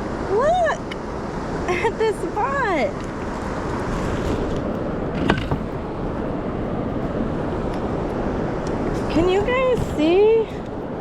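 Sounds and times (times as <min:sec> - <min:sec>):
wind noise on microphone: 0:02.4 - 0:11.0.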